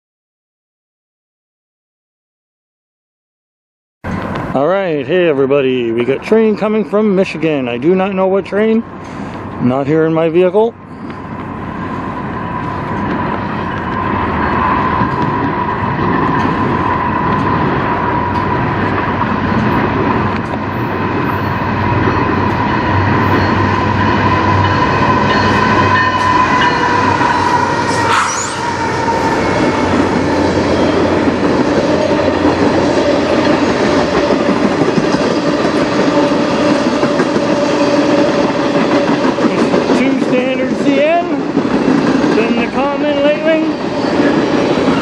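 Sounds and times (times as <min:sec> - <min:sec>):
freight train wheels rumbling: 0:04.0 - 0:45.0
wheels squealing: 0:10.9 - 0:15.5, 0:20.7 - 0:40.1.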